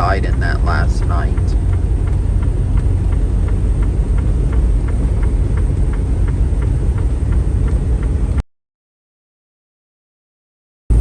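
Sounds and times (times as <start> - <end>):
faint regular ticking: 0.0 - 8.4
truck low rumble from cab: 0.0 - 8.4.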